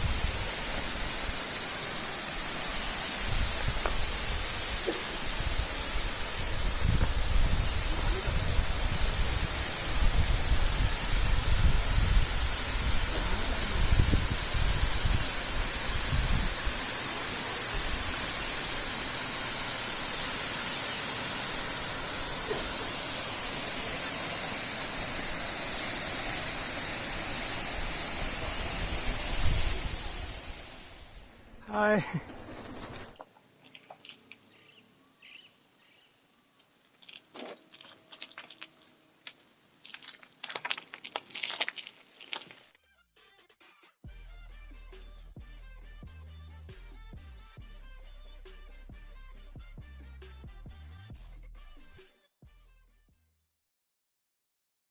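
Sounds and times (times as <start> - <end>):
waterfall rushing: 0.0 - 33.2
insect chorus drone: 0.0 - 42.8.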